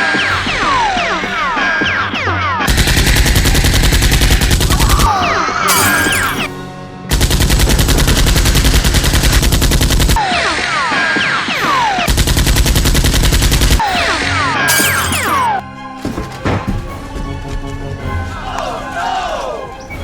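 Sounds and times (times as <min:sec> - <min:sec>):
background music: 0:00.0 - 0:20.0
machine-gun bursts: 0:02.7 - 0:06.5, 0:07.1 - 0:10.2, 0:12.1 - 0:15.5.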